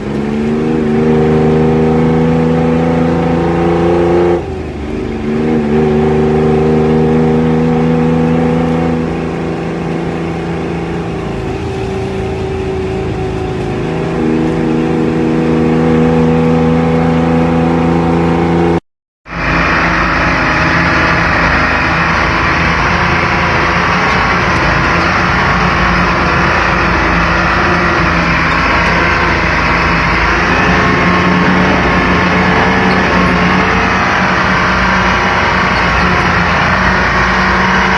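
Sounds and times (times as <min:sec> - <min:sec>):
engine exhaust rumbling: 0:00.0 - 0:18.6, 0:19.2 - 0:37.9.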